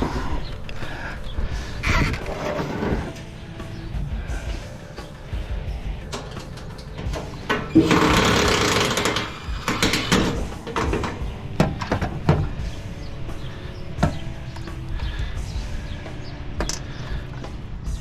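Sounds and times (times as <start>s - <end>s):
metal scraping and rattling: 1.9s - 3.2s, 7.6s - 11.2s
metal clanks and knocks: 6.1s - 12.5s.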